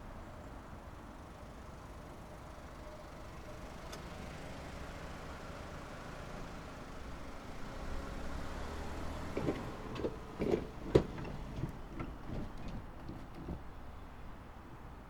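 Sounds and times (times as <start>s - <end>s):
vehicle rumble: 6.9s - 15.0s
tyres knocking over rails: 8.8s - 14.6s.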